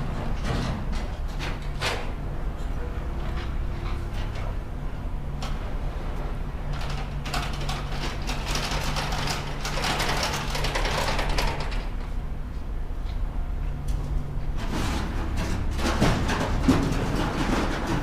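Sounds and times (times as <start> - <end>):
heavy machine engine running: 0.0 - 18.0
metallic clatter and rattling: 6.7 - 12.1, 14.6 - 18.0.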